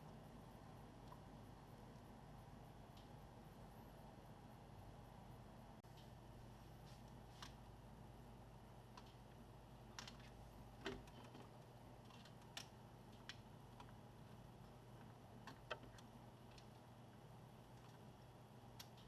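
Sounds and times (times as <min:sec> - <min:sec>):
small sharp clicks and taps: 0:17.7 - 0:19.0.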